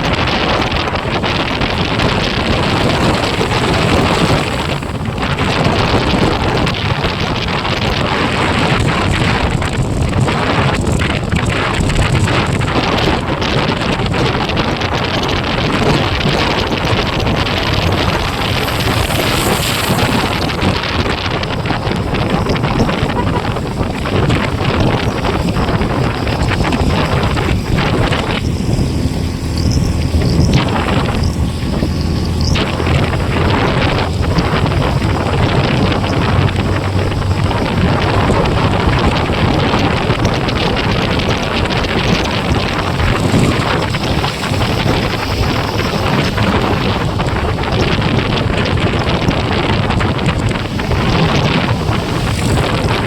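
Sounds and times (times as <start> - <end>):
motorcycle engine humming: 0.0 - 53.0
wind buffeting microphone: 0.0 - 53.0.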